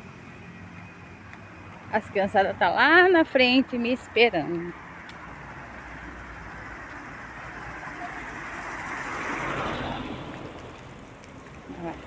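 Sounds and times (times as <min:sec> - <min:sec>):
vehicle passing: 0:00.0 - 0:12.0.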